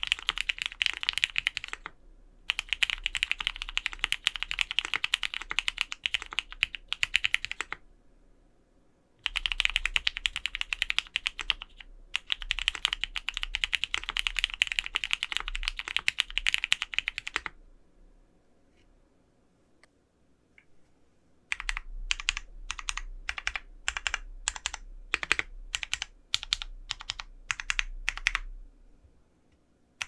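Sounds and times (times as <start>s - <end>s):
fast typing on mechanical keyboard: 0.0s - 7.8s, 9.2s - 17.5s, 21.5s - 28.5s.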